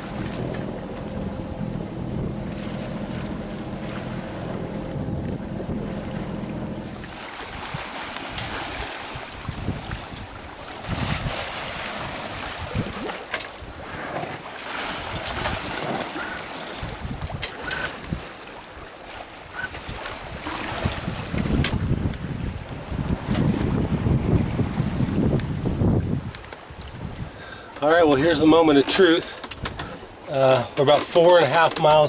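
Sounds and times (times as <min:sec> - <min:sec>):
steady low hum: 0:00.0 - 0:08.1
wind buffeting microphone: 0:00.0 - 0:30.2
water rushing past hull: 0:00.0 - 0:32.0.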